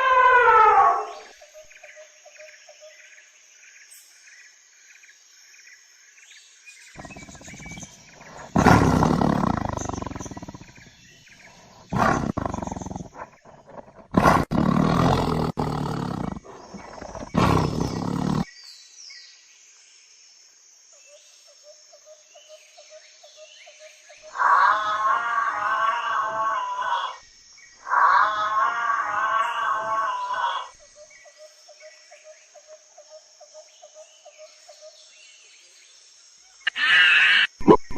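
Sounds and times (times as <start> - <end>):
insects chirping: 0.0 - 37.9
large animal roaring: 7.0 - 11.0, 11.7 - 18.5, 24.4 - 27.2, 27.9 - 30.7
birds chirping: 7.0 - 18.5.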